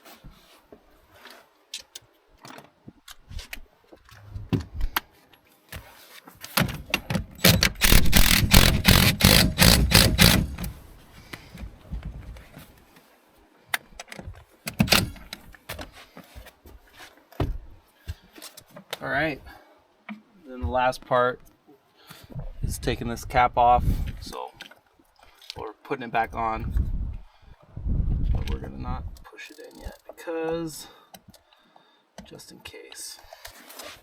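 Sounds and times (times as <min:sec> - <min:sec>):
tools clicking and knocking: 0:06.5 - 0:10.8, 0:14.1 - 0:15.4
impact driver hammering: 0:07.0 - 0:10.8.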